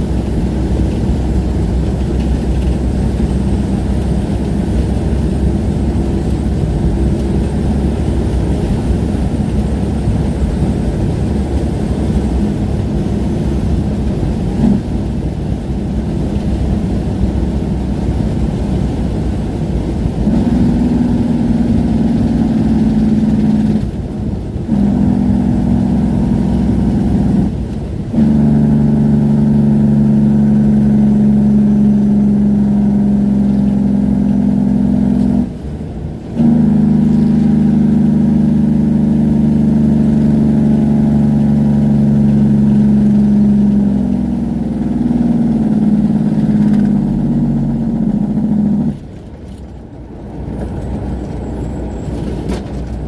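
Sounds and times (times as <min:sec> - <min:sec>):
truck engine brake: 0:45.5 - 0:53.0.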